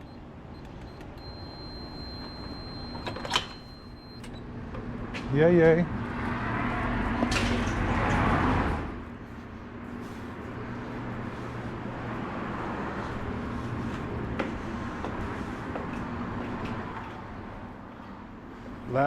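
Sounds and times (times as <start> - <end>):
road and rain noise: 4.2 - 19.0
car engine hum: 5.7 - 19.0.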